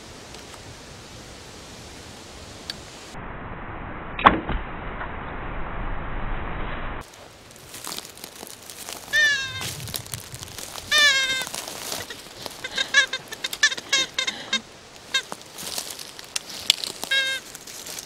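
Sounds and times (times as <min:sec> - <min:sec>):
predator call squealing: 0:09.1 - 0:15.3, 0:17.1 - 0:17.5.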